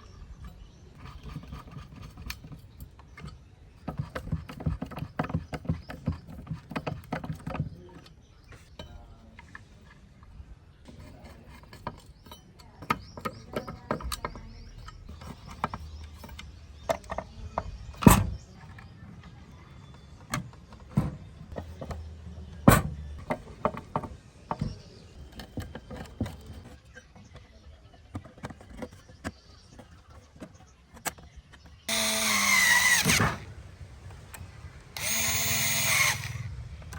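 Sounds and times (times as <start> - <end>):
tools clicking and knocking: 0.4 - 9.9, 10.9 - 27.4.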